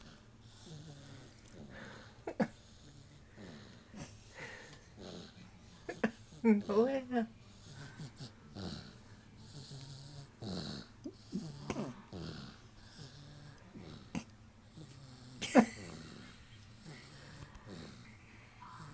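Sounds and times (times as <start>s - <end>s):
wheezy snoring: 0.0s - 18.9s
short snort: 7.6s - 18.2s.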